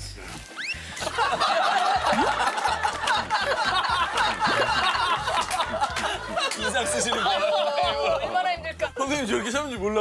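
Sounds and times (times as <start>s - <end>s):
light background music: 0.0s - 10.0s
people snickering and laughing: 0.8s - 8.6s.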